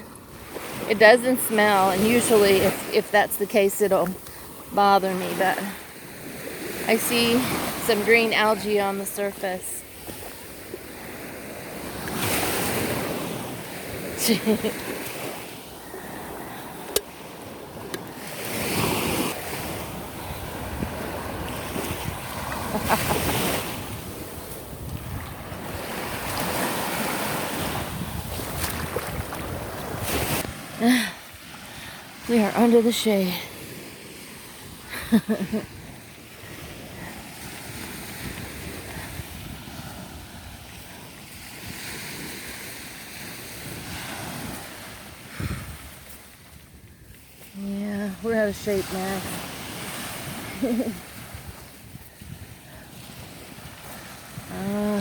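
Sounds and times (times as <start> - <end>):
small waves washing ashore: 0.0 - 55.0
wind buffeting microphone: 15.2 - 30.7, 35.6 - 42.3, 43.5 - 55.0.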